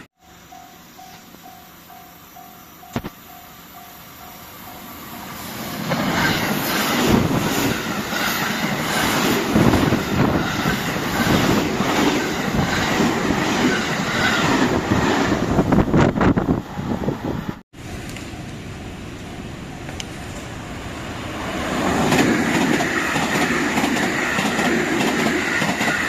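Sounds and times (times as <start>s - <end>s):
level crossing warning bell: 0.2s - 5.3s, 18.2s - 20.4s
train wheels clattering over track: 5.8s - 16.2s, 21.7s - 26.0s.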